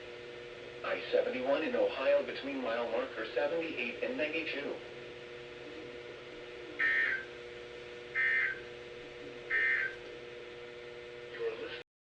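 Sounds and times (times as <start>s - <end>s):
faint steady hum: 0.0s - 11.8s
harsh warbling digital data bursts: 6.8s - 7.3s, 8.1s - 8.7s, 9.5s - 10.0s.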